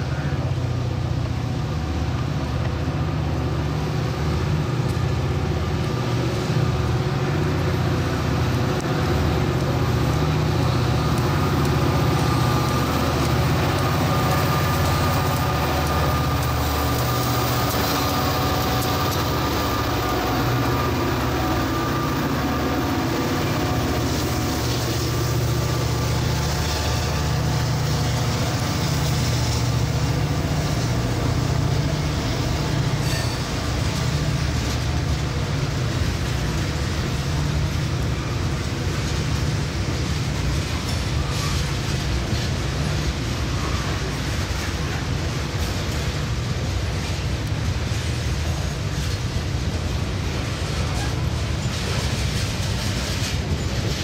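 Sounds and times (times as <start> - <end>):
diesel locomotive engine running: 0.0 - 54.0
thin steady whine: 5.6 - 40.0.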